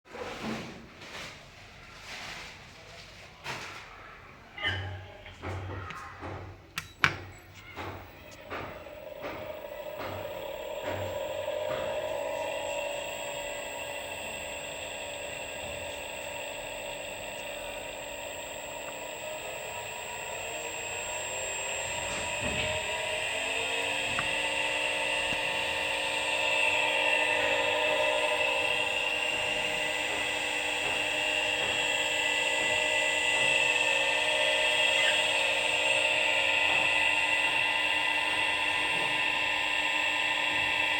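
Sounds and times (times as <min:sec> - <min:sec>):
electric motor whine: 0:07.8 - 0:40.9
thin high whistle: 0:32.6 - 0:36.8.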